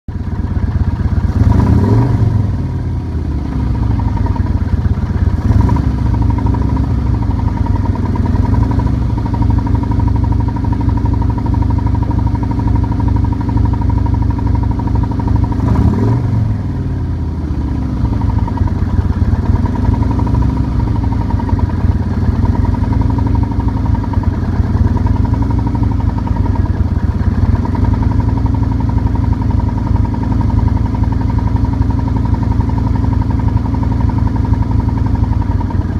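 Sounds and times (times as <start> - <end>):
engine knock: 0.1 - 35.9
motorcycle engine idling and revving: 0.1 - 35.9.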